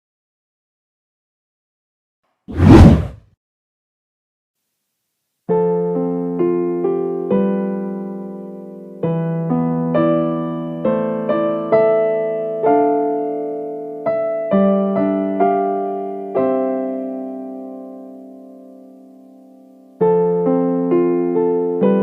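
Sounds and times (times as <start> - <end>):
slow piano music: 5.5 - 22.0.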